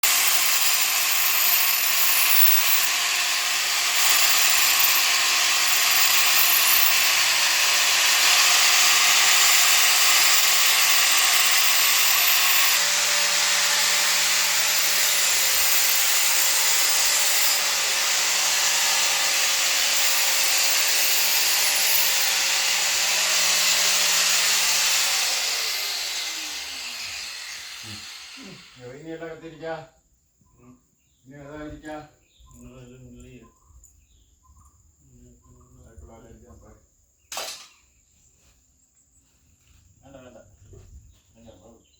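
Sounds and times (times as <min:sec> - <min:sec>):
blade grinding on wheel: 0:00.0 - 0:28.8
grinder motor hum: 0:00.0 - 0:28.8.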